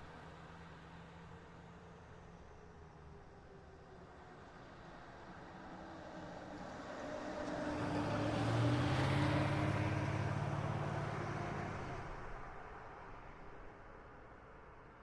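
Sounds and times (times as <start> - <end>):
car driving past: 7.1 - 12.2.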